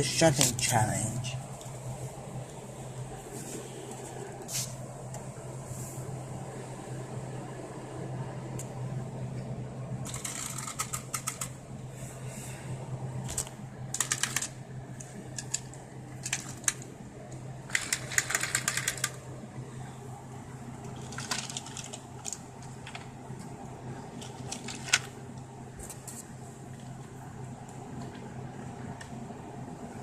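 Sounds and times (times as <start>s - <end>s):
toy trains clicking and rattling: 17.7s - 19.2s.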